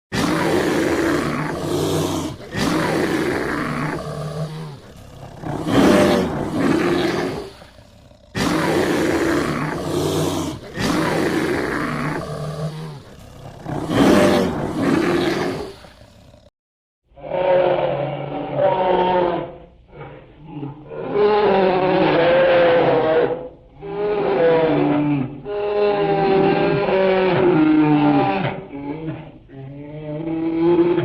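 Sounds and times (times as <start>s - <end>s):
bear growling and roaring: 0.1s - 16.5s.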